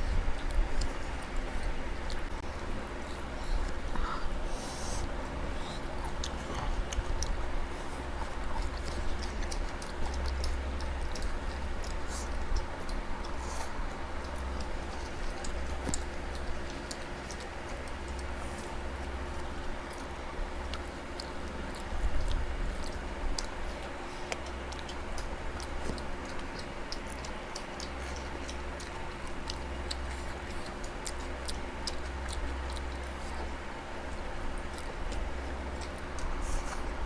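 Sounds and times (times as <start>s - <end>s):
people chewing: 0.0s - 37.0s
steady low hum: 0.0s - 37.0s.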